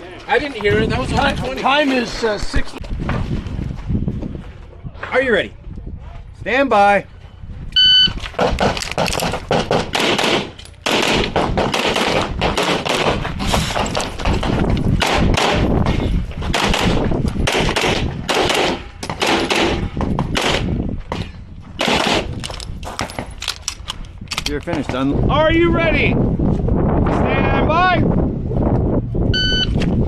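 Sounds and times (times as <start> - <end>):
rapid pistol shots: 8.4 - 13.3, 15.0 - 15.7, 16.5 - 20.7, 21.8 - 22.4.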